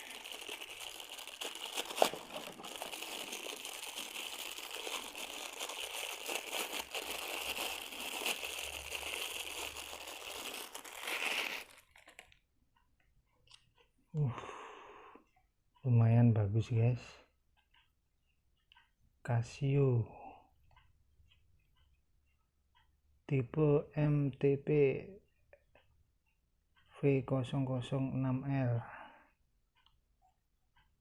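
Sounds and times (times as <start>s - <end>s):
packaging rustling and crackling: 0.0s - 12.4s.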